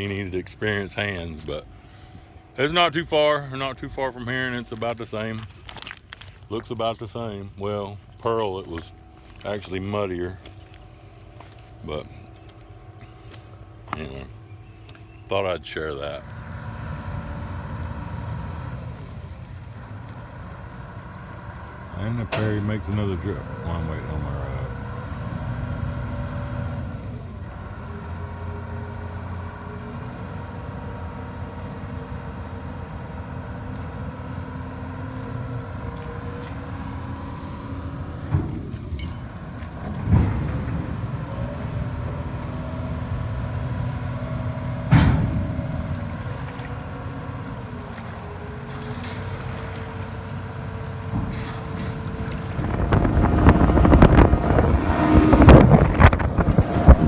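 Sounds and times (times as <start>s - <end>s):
boat diesel engine running: 0.0s - 57.0s
wind on microphone: 51.3s - 57.0s.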